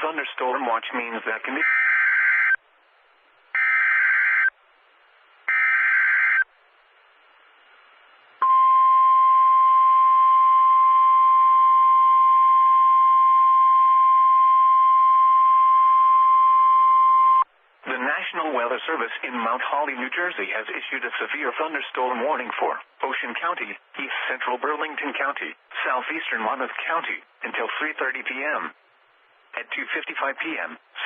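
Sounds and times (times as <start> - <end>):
steady warning alarm tone: 1.6 - 2.6, 3.6 - 4.5, 5.5 - 6.5.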